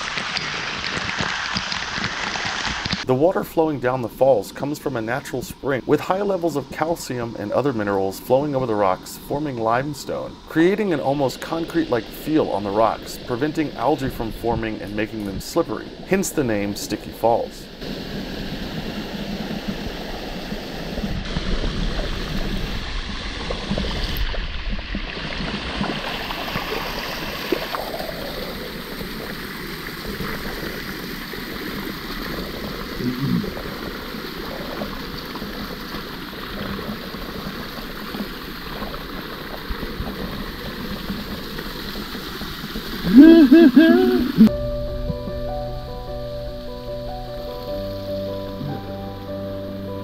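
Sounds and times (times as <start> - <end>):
water rushing over waterfall: 0.0 - 24.3, 25.0 - 44.5
person calling out loudly: 33.0 - 33.5, 43.1 - 44.5.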